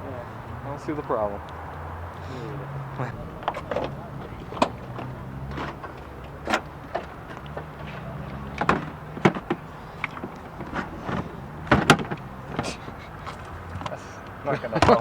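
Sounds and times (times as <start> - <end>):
car engine humming: 0.0 - 15.0
sharp clicks and knocks: 3.4 - 14.0.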